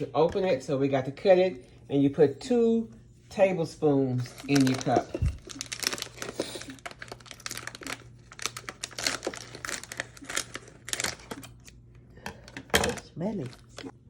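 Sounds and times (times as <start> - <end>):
drink packet crinkling: 4.2 - 14.0.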